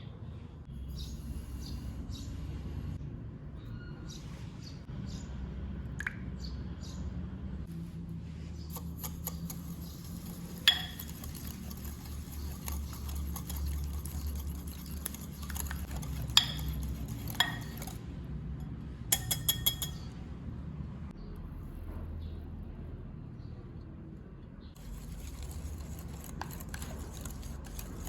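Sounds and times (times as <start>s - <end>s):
utensils clinking against dishes: 10.6s - 11.6s, 12.6s - 18.0s, 19.1s - 20.2s.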